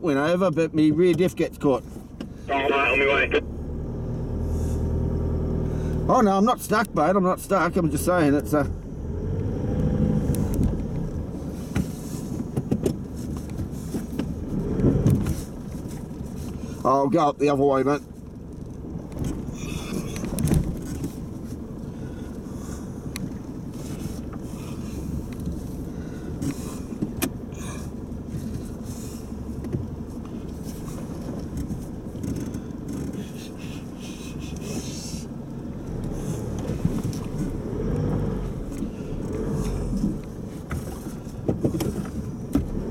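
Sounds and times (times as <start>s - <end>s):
vehicle engine at low revs: 0.0s - 42.9s
knocks and clicks from vehicle body: 0.9s - 1.4s, 2.0s - 2.4s, 11.7s - 16.6s, 18.2s - 21.6s, 26.3s - 27.6s, 29.5s - 33.6s, 35.9s - 42.9s.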